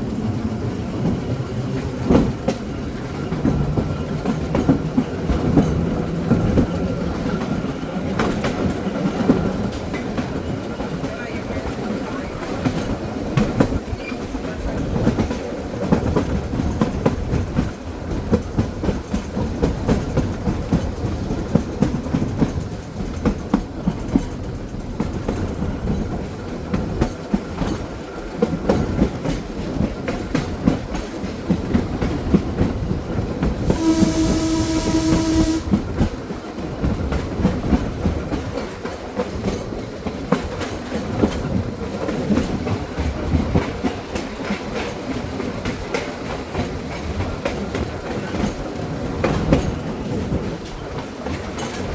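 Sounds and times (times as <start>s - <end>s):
trolley car rumbling on track: 0.0s - 51.9s
horn blast: 33.7s - 35.8s.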